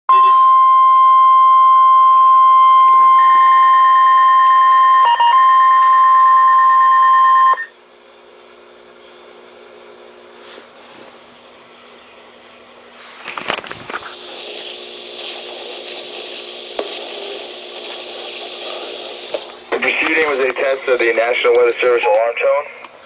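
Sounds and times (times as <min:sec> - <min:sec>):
steady high warning tone: 0:00.1 - 0:07.8, 0:14.1 - 0:22.8
faint receiver hiss: 0:13.4 - 0:20.8.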